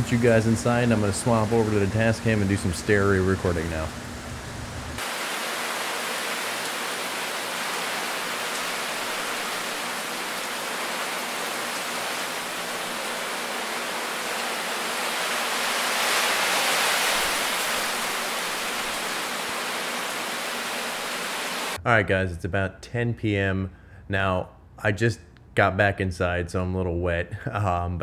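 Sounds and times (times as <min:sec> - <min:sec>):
heavy rain: 0:00.0 - 0:04.2, 0:04.8 - 0:21.8.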